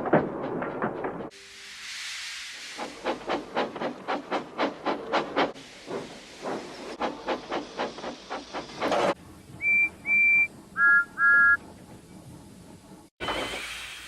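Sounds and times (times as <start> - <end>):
steam locomotive chuffing: 0.0 - 14.0
steam whistle toots: 9.6 - 11.6.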